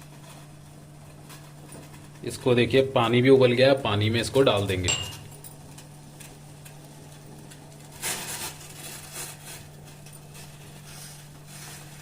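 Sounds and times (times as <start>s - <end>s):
steady low hum: 0.0s - 12.0s
spices scraping and rustling: 7.1s - 12.0s.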